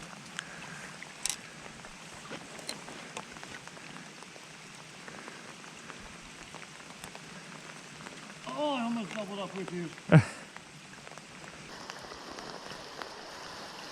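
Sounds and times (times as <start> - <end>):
steady rain falling: 0.0 - 13.9
sharp raindrop ticks: 7.9 - 10.0.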